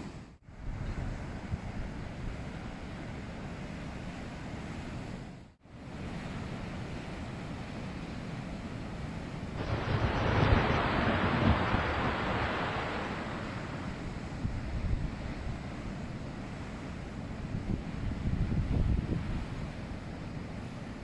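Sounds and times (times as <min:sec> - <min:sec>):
storm waves breaking: 0:09.4 - 0:21.0
wind on microphone: 0:09.6 - 0:16.2, 0:17.4 - 0:20.1.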